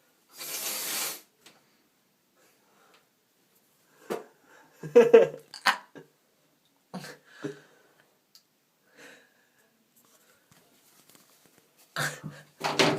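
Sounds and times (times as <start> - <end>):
boy breathing: 8.8 - 10.5.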